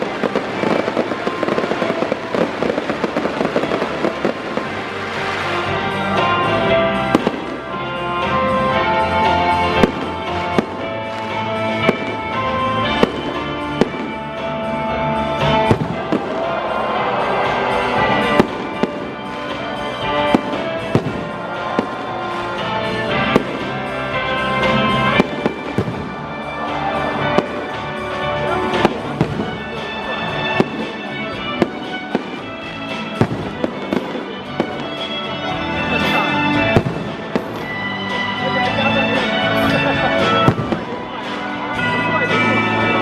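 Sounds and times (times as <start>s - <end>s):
fireworks bangs: 0.0s - 43.0s
loud music: 0.0s - 43.0s.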